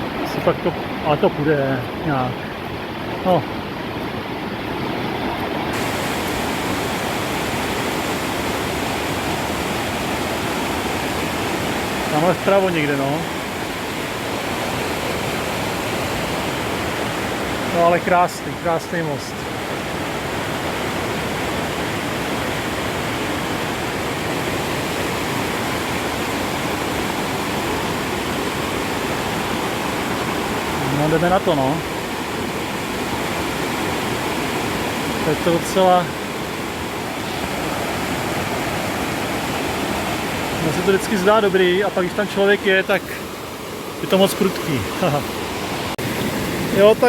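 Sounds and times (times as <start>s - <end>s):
rushing creek water: 0.0s - 47.0s.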